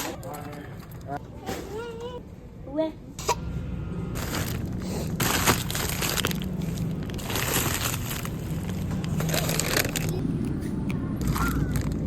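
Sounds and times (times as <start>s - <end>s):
rustling and crinkling: 4.2s - 10.3s, 11.2s - 12.0s.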